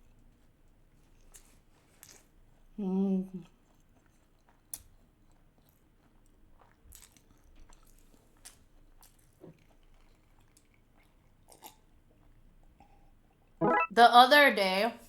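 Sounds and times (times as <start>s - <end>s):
close-up chewing: 0.8s - 2.8s, 3.4s - 13.4s.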